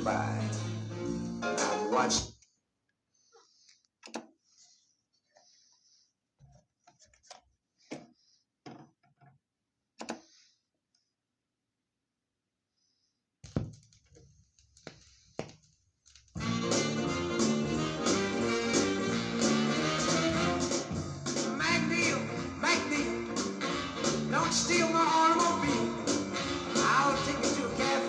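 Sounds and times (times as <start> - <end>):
band music with guitar: 0.0 - 2.2, 16.4 - 28.0
short clicks and knocks: 4.0 - 4.4.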